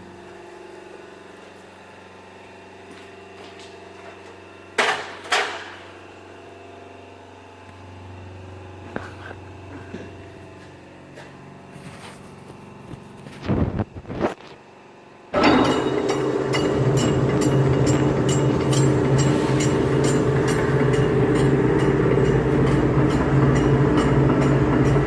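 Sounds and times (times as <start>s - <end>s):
industrial grinder humming: 0.0s - 14.5s, 15.1s - 25.0s
loud metallic knocks: 4.8s - 5.9s, 15.4s - 25.0s.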